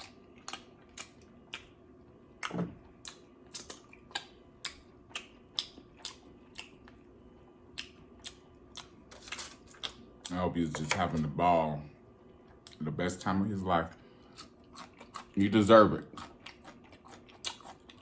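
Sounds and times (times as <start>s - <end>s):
person chewing food: 0.0s - 10.4s, 13.9s - 15.4s, 16.0s - 18.0s.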